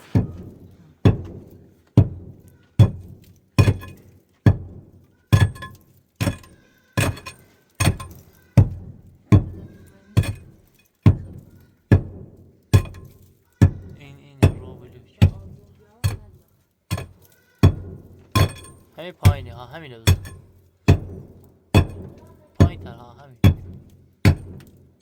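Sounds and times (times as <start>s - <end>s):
metal tool striking hard surface: 2.8s - 4.6s, 5.3s - 24.8s.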